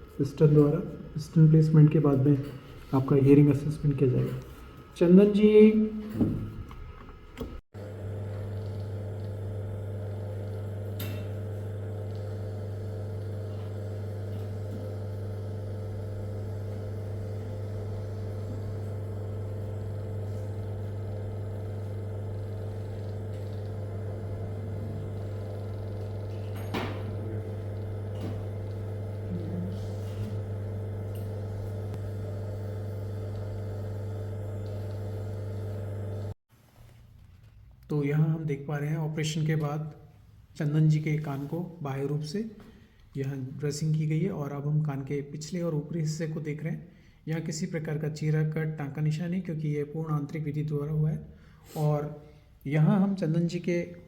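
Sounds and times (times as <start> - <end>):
steady low hum: 7.8 - 36.4.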